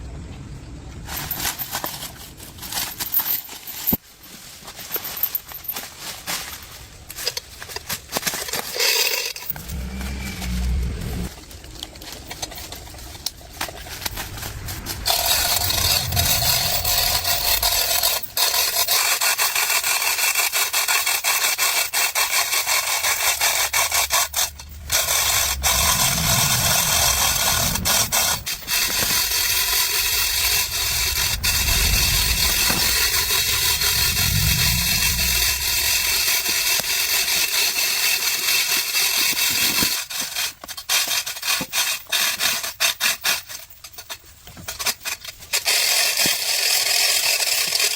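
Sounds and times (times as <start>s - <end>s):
power tool scraping a surface: 14.6s - 37.8s.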